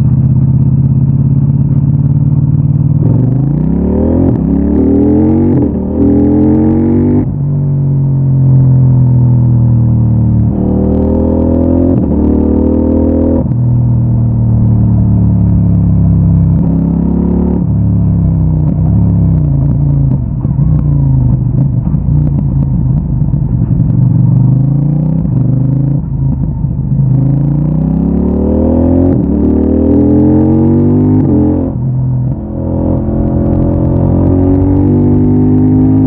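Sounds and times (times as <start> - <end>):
motorcycle engine revving with upshifts: 0.0 - 36.0.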